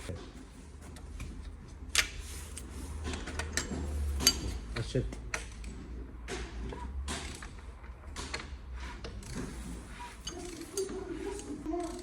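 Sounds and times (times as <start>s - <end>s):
hand tools knocking on metal: 3.0s - 5.5s.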